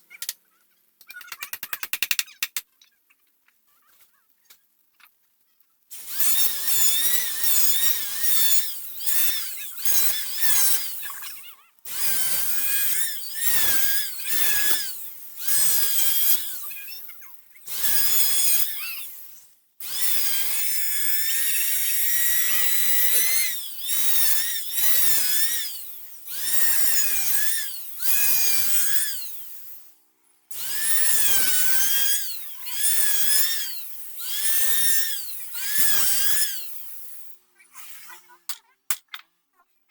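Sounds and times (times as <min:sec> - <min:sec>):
power tool cutting wood: 0:05.9 - 0:29.9, 0:30.5 - 0:38.3.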